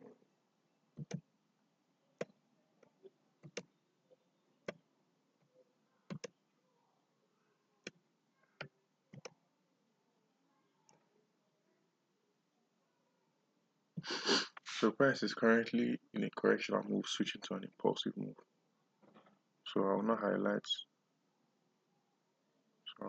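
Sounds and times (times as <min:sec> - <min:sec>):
computer mouse clicking: 0:01.0 - 0:01.2, 0:02.2 - 0:03.7, 0:06.1 - 0:06.4, 0:08.6 - 0:09.4.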